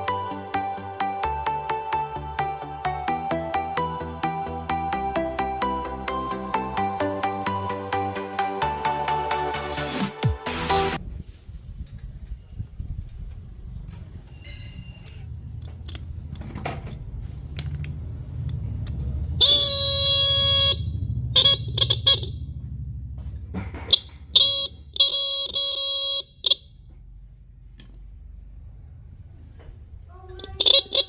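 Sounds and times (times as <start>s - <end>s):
low rumble: 11.0s - 23.8s
bike horn beeping: 19.3s - 22.6s, 23.9s - 26.9s, 30.4s - 31.0s.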